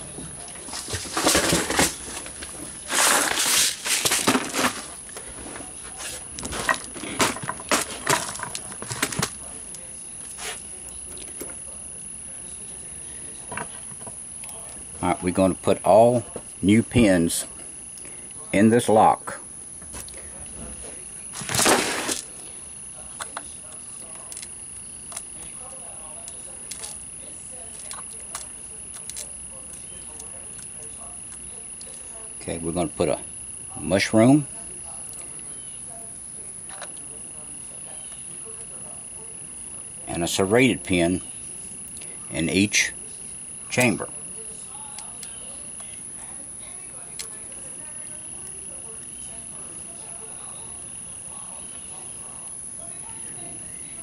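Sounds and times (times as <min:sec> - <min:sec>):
faint high whine: 0:00.0 - 0:54.0
scraping rustle: 0:00.4 - 0:09.4, 0:20.6 - 0:22.3.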